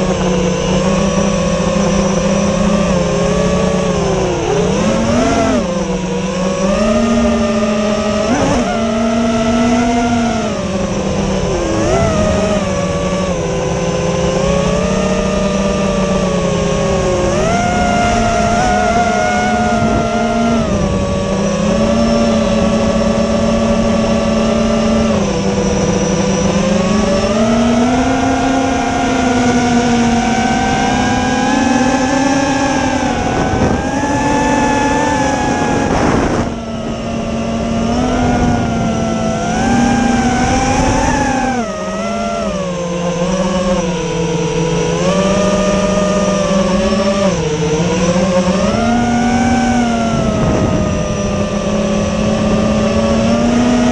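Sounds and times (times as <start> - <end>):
quadcopter motors whining: 0.0 - 53.9.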